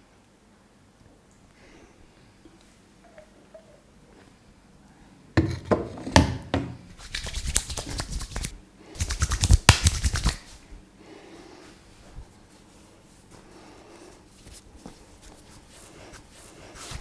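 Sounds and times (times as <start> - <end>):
hands tapping and slapping skin: 7.0 - 10.4.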